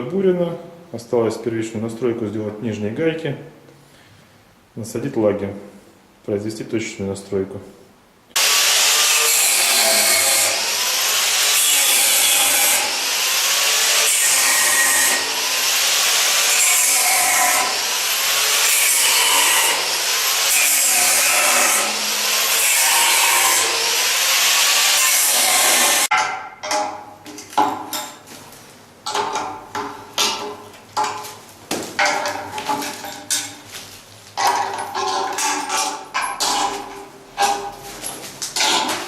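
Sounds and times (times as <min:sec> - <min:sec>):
power tool cutting: 0:08.4 - 0:26.1.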